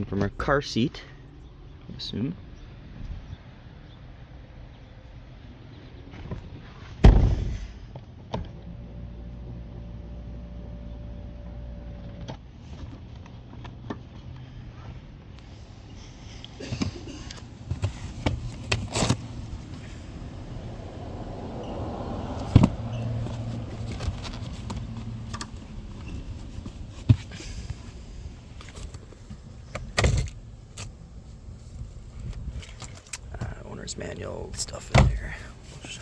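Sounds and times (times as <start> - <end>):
heavy thump: 7.0 - 7.8.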